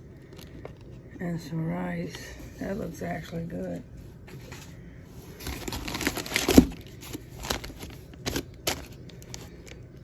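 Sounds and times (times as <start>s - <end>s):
packages crinkling and rustling: 4.3s - 10.0s
package bump: 5.4s - 9.0s.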